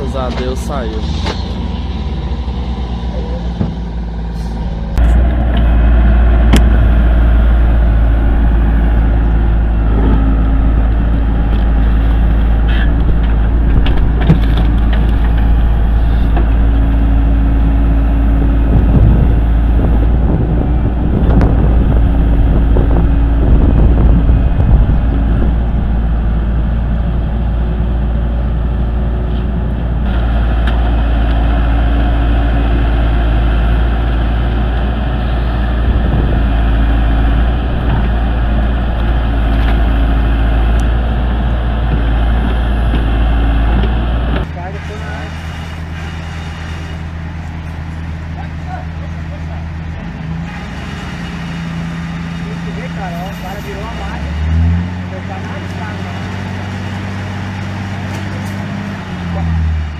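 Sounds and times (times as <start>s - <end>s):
heavy machinery engine running: 0.0s - 59.9s
knocks and clanks: 3.6s - 4.0s, 11.4s - 16.8s.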